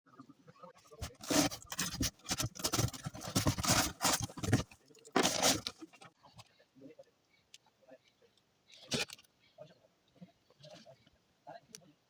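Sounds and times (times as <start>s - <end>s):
hands rustling cardboard packaging: 0.9s - 6.1s.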